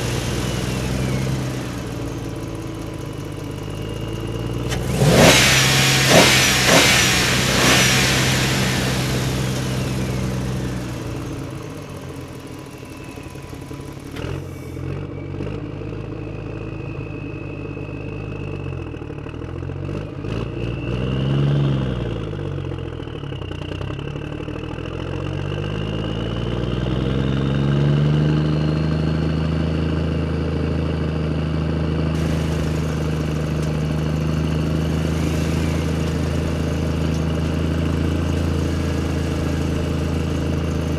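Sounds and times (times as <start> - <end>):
loud noisy burst: 0.0 - 3.0, 4.1 - 14.1, 32.2 - 40.9
vehicle engine revving: 0.0 - 16.0, 32.2 - 40.9.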